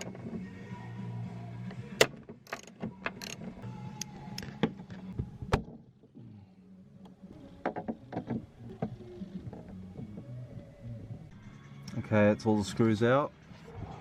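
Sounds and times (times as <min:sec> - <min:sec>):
socket ratchet clicking: 0:02.4 - 0:03.4.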